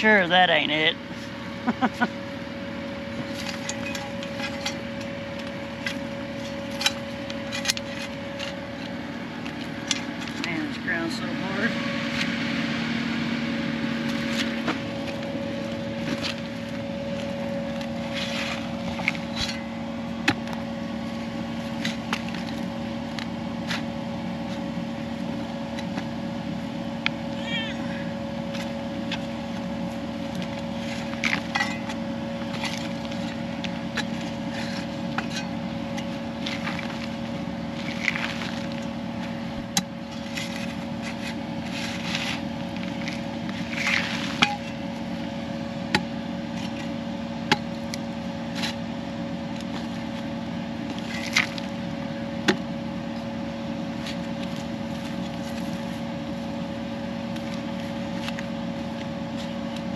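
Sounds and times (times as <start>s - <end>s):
excavator diesel engine running: 0.0s - 59.9s
bucket scraping hard ground: 18.0s - 19.7s, 40.2s - 44.8s.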